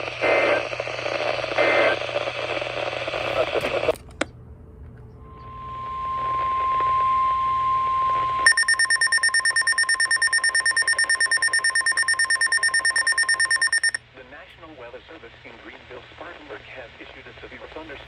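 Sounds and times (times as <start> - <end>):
steady electronic tone: 7.0 - 14.0
rapid electronic alarm beeping: 8.4 - 14.0.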